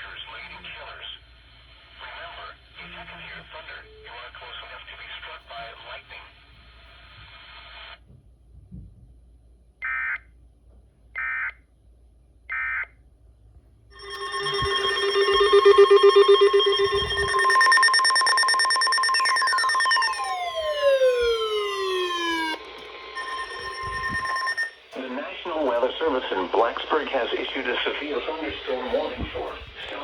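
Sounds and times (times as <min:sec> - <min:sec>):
falling pitch sweeps: 0:14.0 - 0:25.1
loud steady alert tone: 0:14.0 - 0:25.7
warbling data tones: 0:14.0 - 0:25.8.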